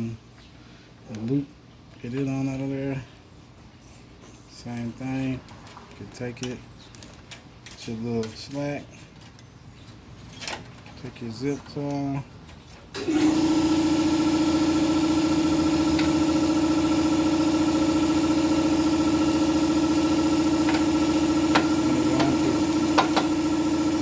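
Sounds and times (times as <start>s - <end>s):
air compressor humming: 12.9s - 24.0s.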